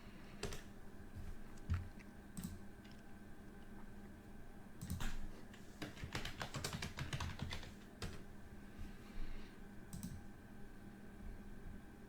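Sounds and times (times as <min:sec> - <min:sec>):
computer keyboard typing: 0:05.8 - 0:08.2.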